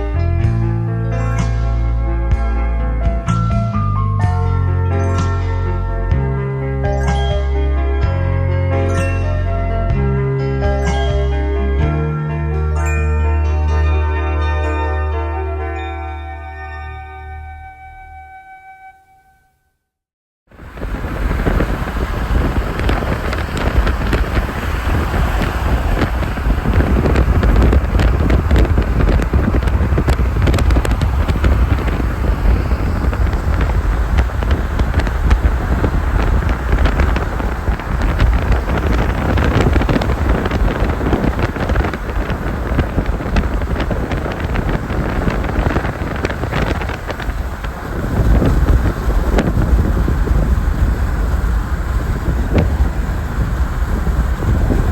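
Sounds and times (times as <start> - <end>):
car road noise on highway: 20.5 - 54.9
wind on microphone: 20.5 - 54.9.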